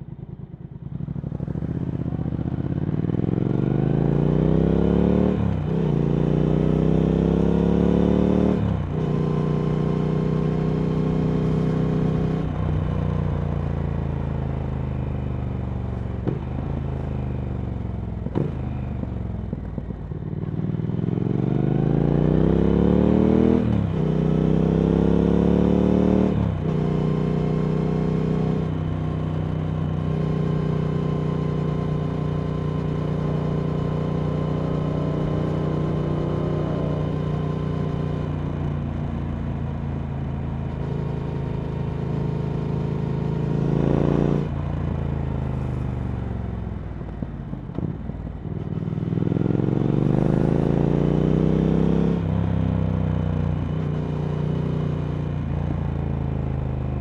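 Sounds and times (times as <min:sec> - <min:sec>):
motorcycle engine revving and shifting: 0:00.9 - 0:57.0.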